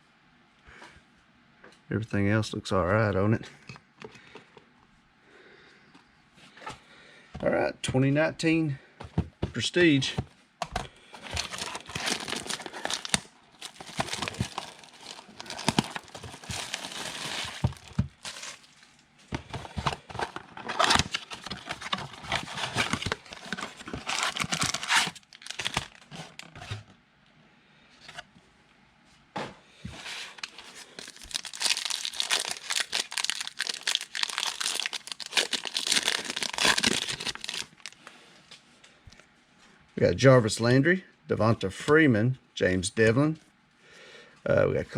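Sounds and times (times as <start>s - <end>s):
foil wrappers tearing and crinkling: 11.2s - 18.9s, 19.7s - 26.6s, 30.4s - 38.0s.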